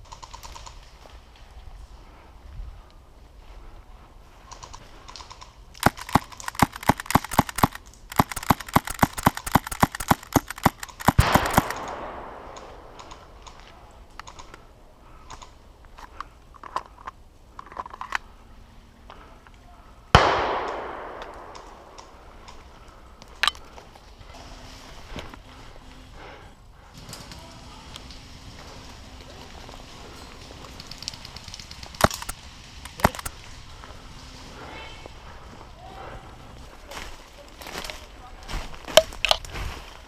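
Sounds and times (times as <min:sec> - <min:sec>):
airsoft pistol shots: 0:05.8 - 0:13.0, 0:20.2 - 0:22.0, 0:32.9 - 0:33.3.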